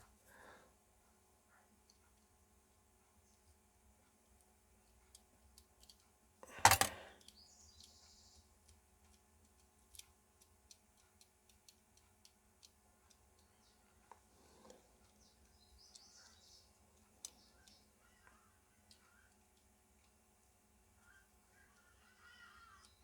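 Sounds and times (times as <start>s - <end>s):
plastic parts clattering: 6.4s - 7.1s
plastic clock gears clicking: 6.6s - 7.0s.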